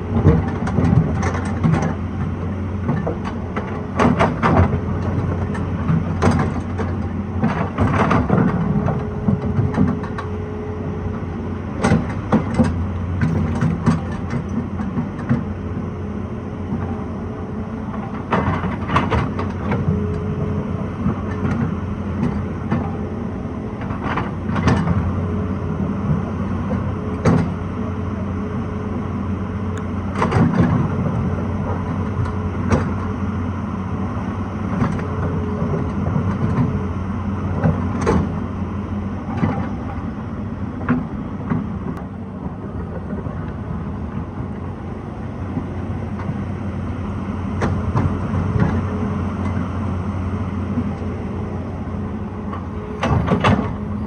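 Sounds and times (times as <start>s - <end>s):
excavator diesel engine running: 0.0s - 54.0s
higher steady tone: 19.8s - 21.0s.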